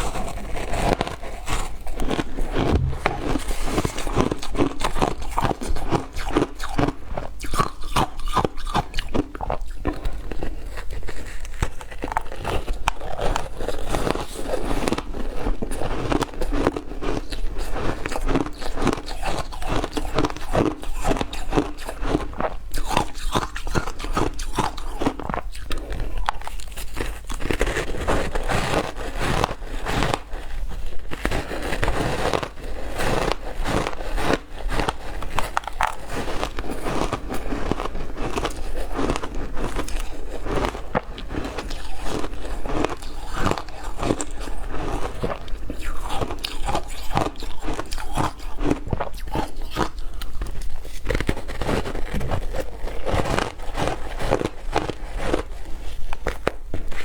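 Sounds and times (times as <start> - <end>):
ice being chewed: 4.7 - 57.0.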